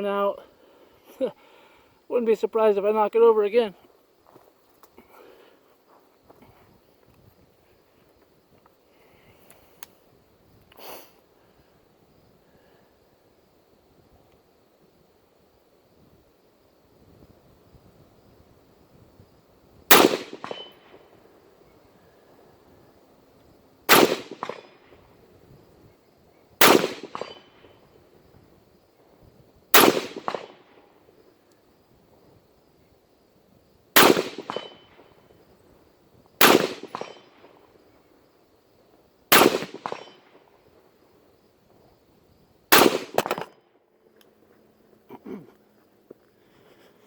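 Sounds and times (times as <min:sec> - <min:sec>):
rifle shots: 0:19.9 - 0:21.0, 0:23.9 - 0:24.9, 0:26.6 - 0:27.7, 0:29.7 - 0:30.8, 0:34.0 - 0:35.0, 0:36.4 - 0:37.5, 0:39.3 - 0:40.4, 0:42.7 - 0:43.6
metallic clang of target: 0:20.4 - 0:20.8, 0:34.4 - 0:34.9.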